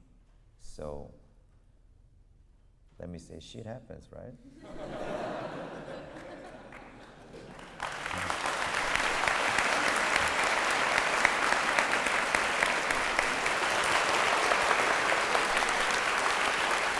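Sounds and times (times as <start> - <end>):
audience applauding: 5.8 - 16.9.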